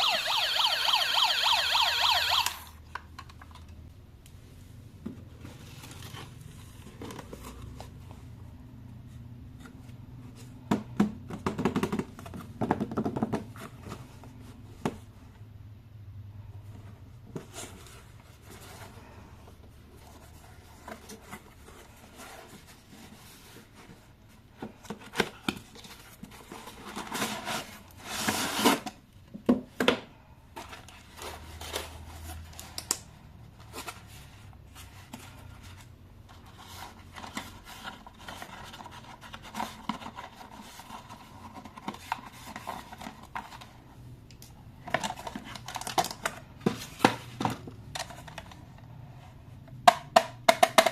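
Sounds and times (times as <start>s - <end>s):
hands rubbing and scraping packaging: 5.4s - 10.6s, 16.8s - 29.0s, 30.5s - 49.6s
packaging rustling and tearing: 44.9s - 46.9s.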